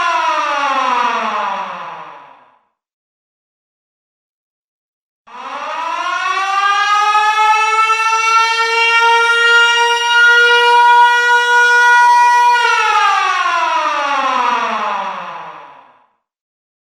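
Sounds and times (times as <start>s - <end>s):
air-raid siren wailing: 0.0s - 2.4s, 5.3s - 15.9s.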